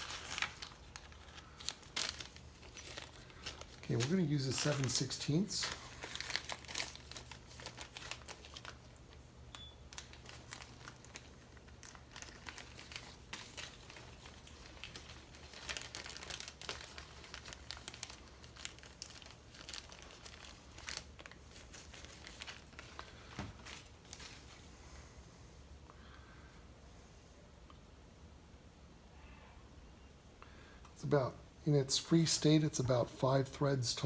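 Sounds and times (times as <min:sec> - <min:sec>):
packaging crinkling: 0:00.0 - 0:24.7
steady low hum: 0:00.0 - 0:34.0.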